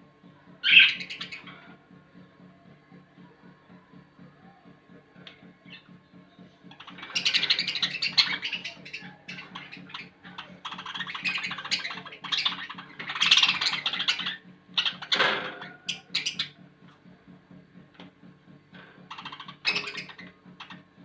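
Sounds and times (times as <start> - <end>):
steady low hum: 0.0 - 21.0
budgerigars squawking: 0.6 - 1.6, 6.7 - 16.6, 19.1 - 20.8.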